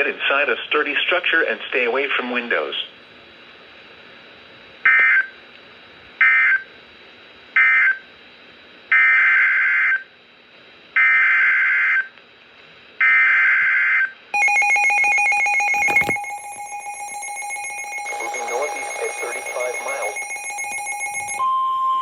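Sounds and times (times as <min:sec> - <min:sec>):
rapidly pulsing alert tone: 0:14.4 - 0:21.4.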